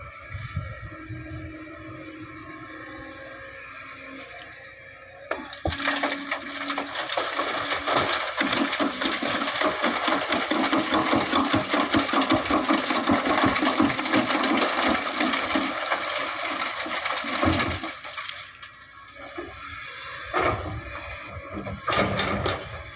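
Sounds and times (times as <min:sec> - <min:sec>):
low machine engine hum: 0:00.0 - 0:10.3
sand and stones pouring into truck: 0:05.3 - 0:22.9.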